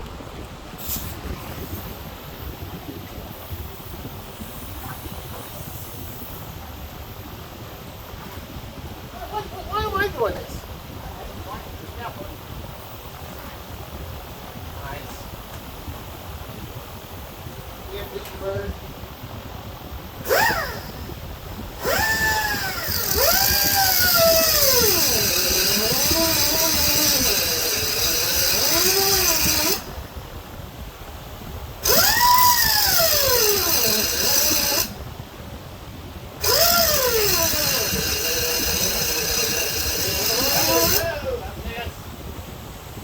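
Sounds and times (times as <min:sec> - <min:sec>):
die grinder cutting metal: 0:20.2 - 0:30.0, 0:31.8 - 0:35.0, 0:36.4 - 0:41.4.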